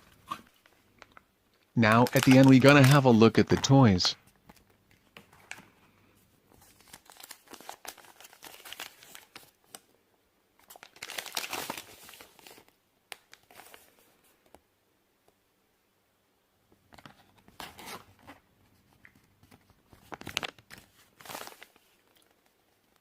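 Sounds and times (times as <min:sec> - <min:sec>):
plastic wrappers crinkling and tearing: 0:00.0 - 0:05.7, 0:06.6 - 0:09.9, 0:10.6 - 0:14.0, 0:19.1 - 0:23.0.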